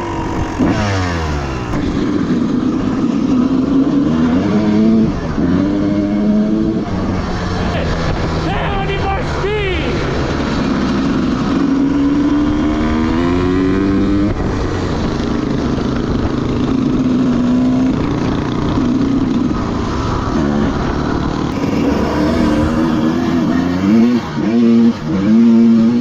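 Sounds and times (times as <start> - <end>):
dirt bike engine accelerating: 0.0 - 26.0.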